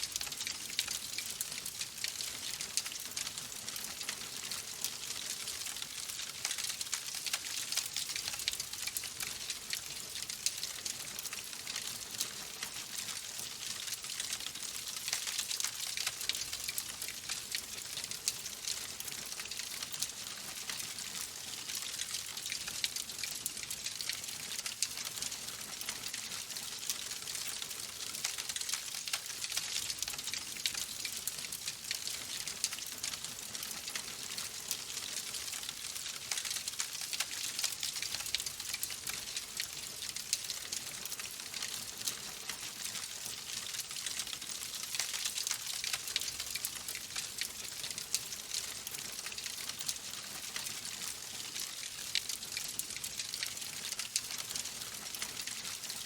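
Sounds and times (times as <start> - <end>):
fire crackling and popping: 21.8 - 56.0.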